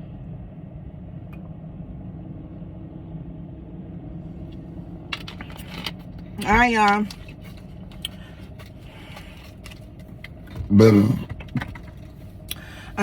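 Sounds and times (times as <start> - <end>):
car idling: 4.0 - 13.0.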